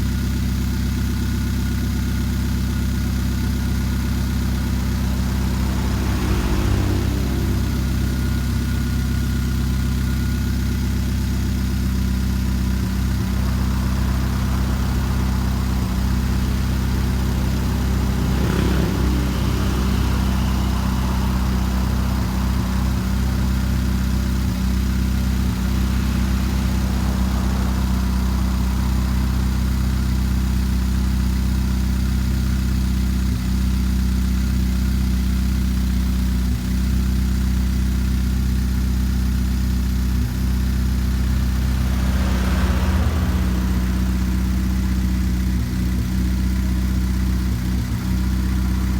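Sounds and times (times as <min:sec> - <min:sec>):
car engine idling with misfire: 0:00.0 - 0:48.9.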